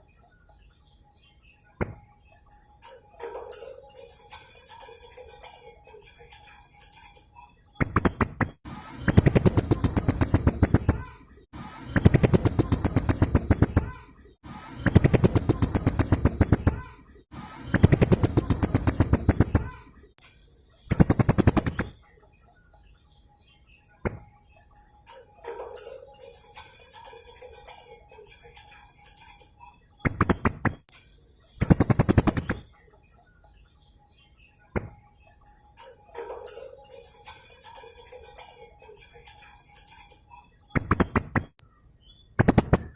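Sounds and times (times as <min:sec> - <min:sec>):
parrot rattling trills: 0:09.1 - 0:11.1, 0:17.8 - 0:19.8, 0:25.1 - 0:30.8, 0:35.7 - 0:41.5.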